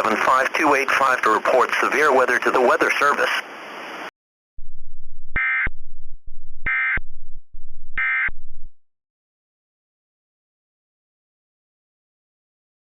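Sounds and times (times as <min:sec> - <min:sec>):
low buzz: 0:04.6 - 0:08.9
warbling digital data tones: 0:06.6 - 0:07.0.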